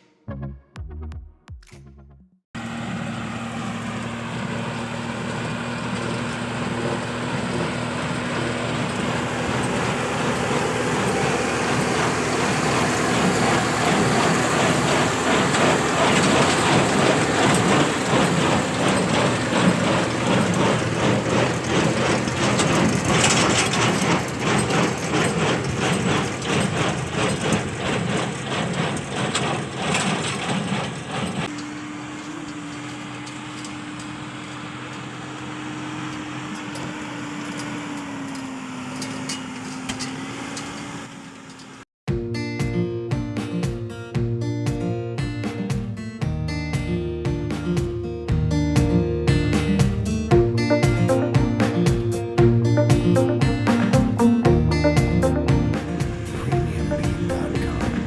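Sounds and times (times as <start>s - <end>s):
tractor engine running: 2.6s - 41.9s, 48.5s - 58.0s
baler rhythmic clatter: 3.6s - 31.6s, 49.6s - 58.0s.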